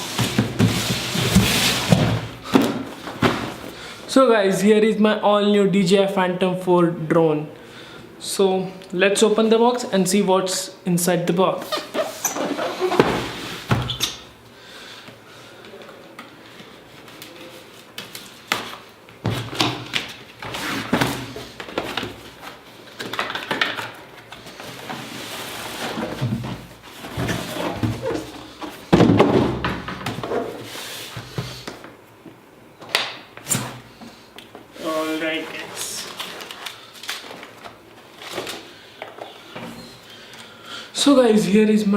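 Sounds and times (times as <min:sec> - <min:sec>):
box knocks and thumps: 0:00.0 - 0:03.8, 0:26.0 - 0:30.6
cardboard rustling and scraping: 0:00.0 - 0:03.8, 0:11.6 - 0:13.9, 0:23.8 - 0:28.9.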